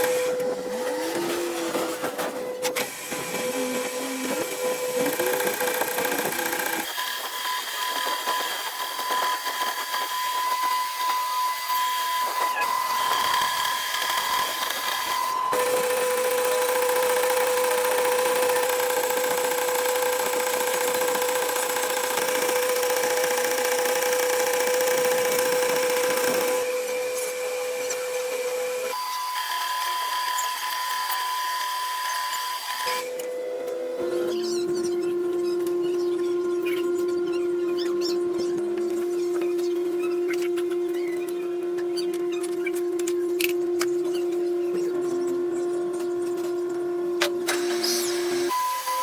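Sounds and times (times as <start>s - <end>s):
lathe cutting metal whine: 2.9s - 38.9s.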